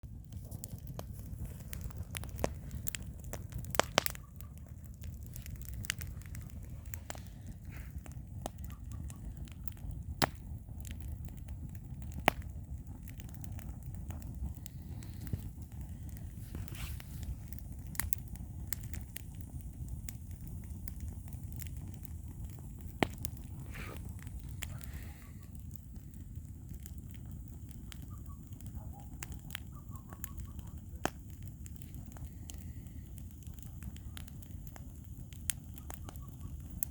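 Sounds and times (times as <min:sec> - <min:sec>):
campfire crackling and popping: 0:00.0 - 0:36.9.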